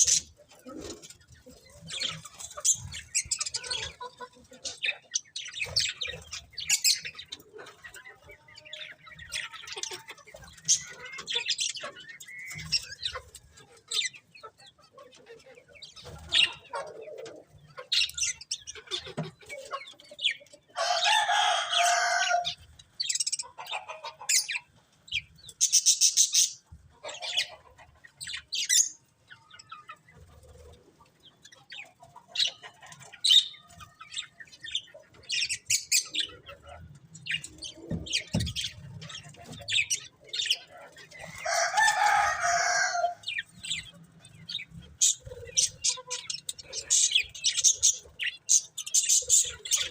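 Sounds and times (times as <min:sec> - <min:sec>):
budgerigars chirping: 0:01.3 - 0:08.1, 0:08.7 - 0:16.8, 0:43.0 - 0:49.9.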